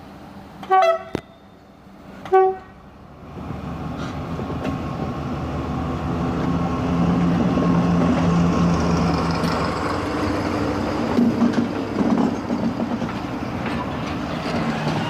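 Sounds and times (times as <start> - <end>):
locomotive horn toot: 0.6 - 2.8.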